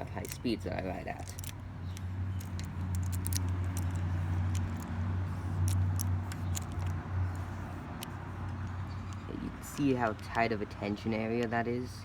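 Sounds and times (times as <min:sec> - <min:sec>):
light clicks and taps: 0:01.2 - 0:04.9, 0:05.6 - 0:11.6.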